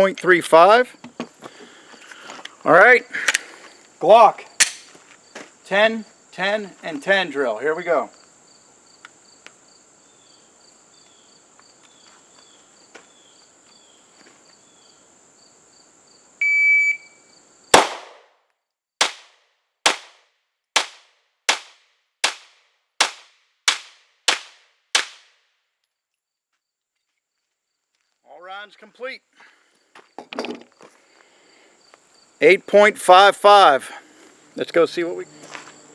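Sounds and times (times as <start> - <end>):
insects chirring: 0.0 - 17.8, 25.7 - 35.9
shot timer beep: 16.4 - 17.2
pistol shots: 17.7 - 18.3, 19.9 - 20.2.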